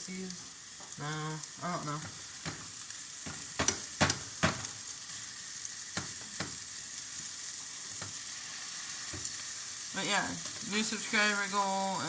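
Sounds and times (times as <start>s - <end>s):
patties sizzling in a frying pan: 0.0s - 12.0s
sharp knocks against a pan: 2.0s - 4.8s, 5.9s - 6.6s.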